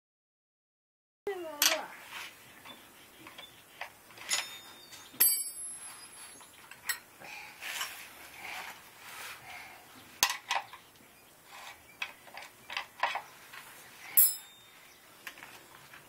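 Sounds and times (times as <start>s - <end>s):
metal tools clinking: 4.1s - 7.1s, 11.6s - 14.9s.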